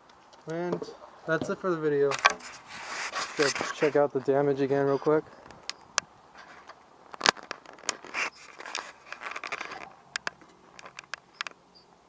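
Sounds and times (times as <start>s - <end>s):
rustling and scraping: 0.0s - 11.6s
sharp clicks and knocks: 5.4s - 11.6s.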